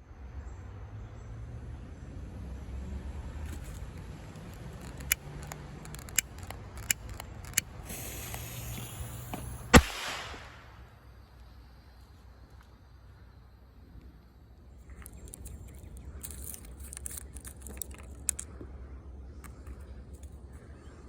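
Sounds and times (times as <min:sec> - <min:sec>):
sharp clicks: 0:03.5 - 0:10.7
fuse fizzing hiss: 0:07.8 - 0:10.6
firecracker bang: 0:08.0 - 0:10.9.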